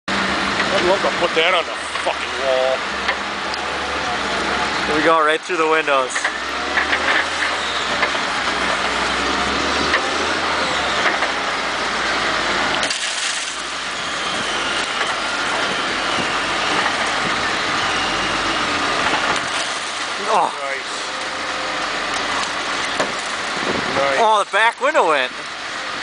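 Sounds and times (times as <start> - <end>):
heavy machine crushing a car: 0.1 - 26.0
high metal squeals: 3.6 - 12.6, 13.2 - 24.1
metal and glass crunching: 12.8 - 13.7.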